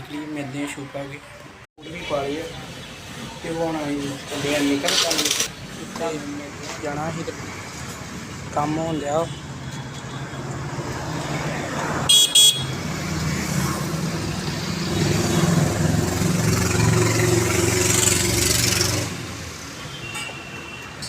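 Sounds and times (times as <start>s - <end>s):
vehicle engines running: 1.1s - 19.8s
car horn toots: 12.1s - 12.8s.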